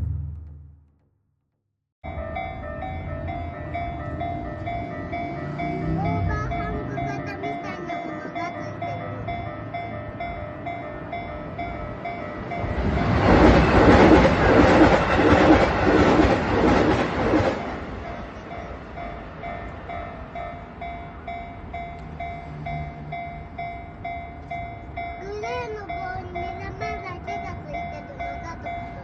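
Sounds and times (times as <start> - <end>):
level-crossing warning bell: 2.0 - 29.0
train wheels clattering: 12.5 - 19.8.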